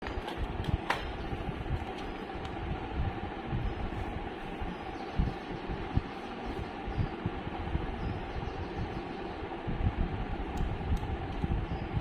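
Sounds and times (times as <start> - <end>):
rumbling handling noise: 0.0 - 7.9.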